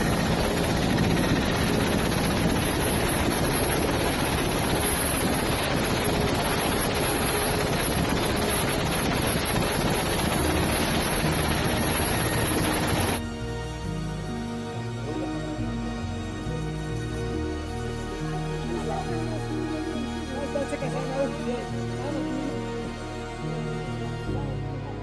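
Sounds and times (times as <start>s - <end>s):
loud rumble and rush: 0.0s - 13.2s.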